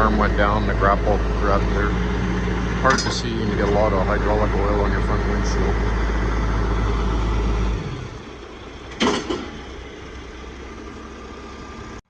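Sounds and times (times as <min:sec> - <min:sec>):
truck diesel engine running: 0:00.0 - 0:12.0
sharp metal clunk: 0:08.9 - 0:09.7.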